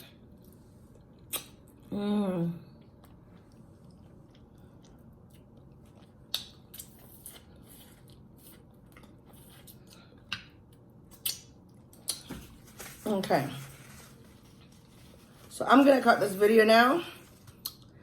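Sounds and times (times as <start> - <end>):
person chewing and biting: 0.3 - 1.9, 2.8 - 12.3
wet mouth clicks: 1.3 - 1.6.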